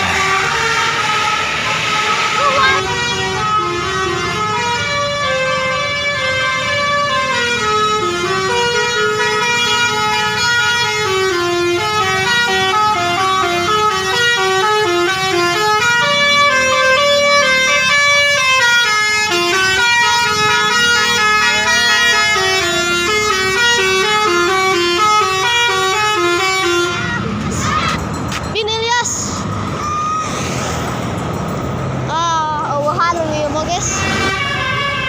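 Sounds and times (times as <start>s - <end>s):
musical air horn playing a tune: 0.0s - 27.2s.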